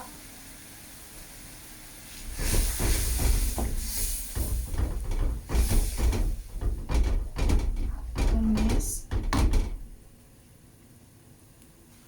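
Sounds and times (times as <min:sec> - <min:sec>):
paste sizzling in a wok: 0:00.1 - 0:04.7.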